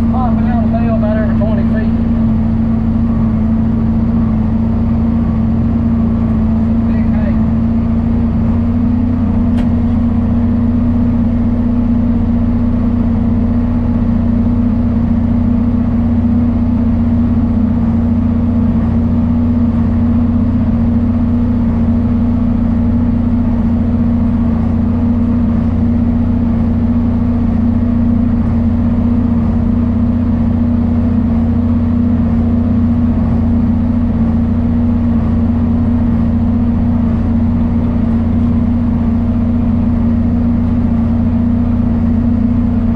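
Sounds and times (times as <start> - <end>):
tractor diesel engine running: 0.0 - 42.9.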